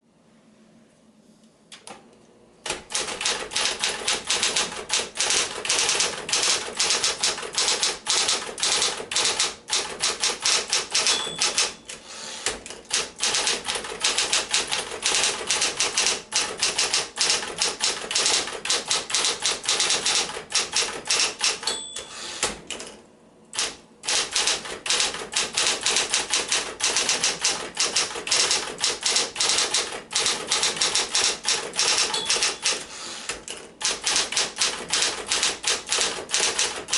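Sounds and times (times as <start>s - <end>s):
electric typewriter typing: 2.6s - 36.9s
typewriter bell ding: 10.9s - 11.9s, 21.1s - 22.3s, 31.8s - 32.8s.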